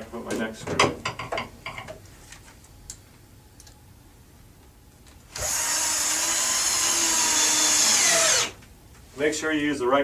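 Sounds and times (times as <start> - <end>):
power drill driving a screw: 5.3 - 8.6.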